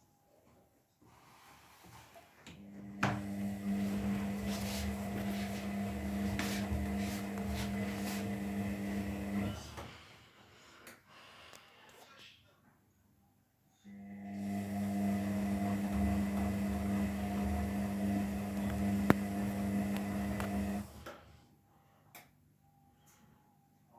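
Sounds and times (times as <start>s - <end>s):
washing machine humming: 2.5s - 9.9s, 13.9s - 21.1s.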